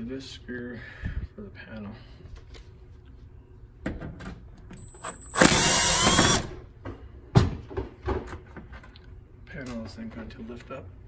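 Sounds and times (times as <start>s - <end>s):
power drill whine: 4.8s - 6.6s.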